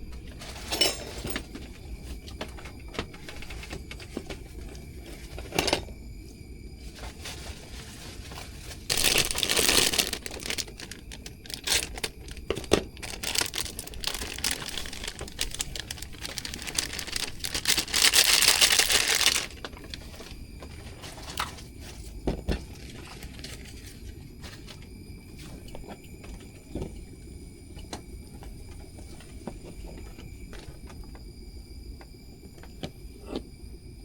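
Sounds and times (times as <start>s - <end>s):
crinkling and rustling: 0.0s - 5.8s, 6.8s - 26.0s.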